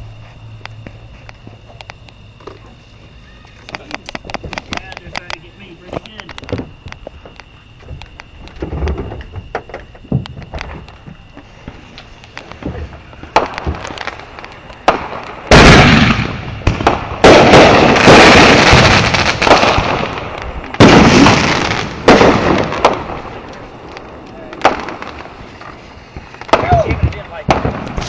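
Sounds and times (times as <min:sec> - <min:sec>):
fireworks popping and crackling: 0:00.7 - 0:28.0
fireworks booming: 0:03.7 - 0:28.0.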